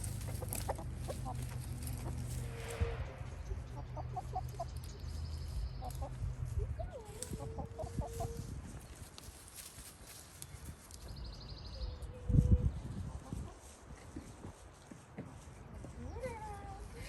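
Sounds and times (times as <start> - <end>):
chickens clucking: 0.0 - 2.4, 3.5 - 8.5, 12.0 - 14.3
low steady rumble: 0.0 - 8.6.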